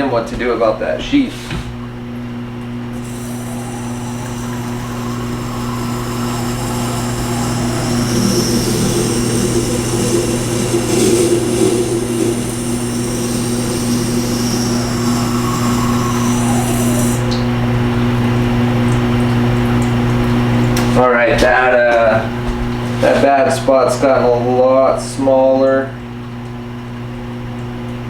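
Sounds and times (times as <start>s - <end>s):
grinder motor hum: 2.9s - 17.6s
blade grinding on stone: 3.0s - 17.2s.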